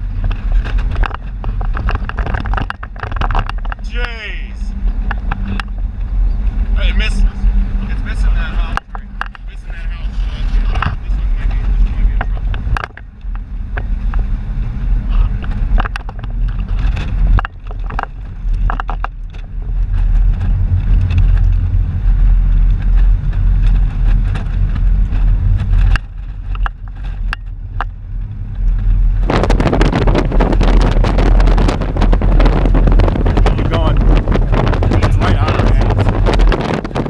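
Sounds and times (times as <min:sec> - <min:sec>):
car road noise rumble: 0:00.0 - 0:37.0
clicks and rattles: 0:00.2 - 0:03.8
rushing hiss of wind or rain: 0:29.2 - 0:37.0.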